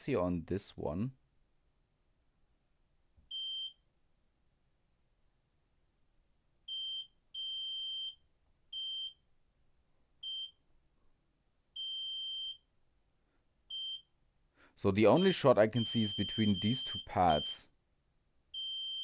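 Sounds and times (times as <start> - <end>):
multimeter continuity beeps: 15.1 - 17.6, 18.6 - 19.0.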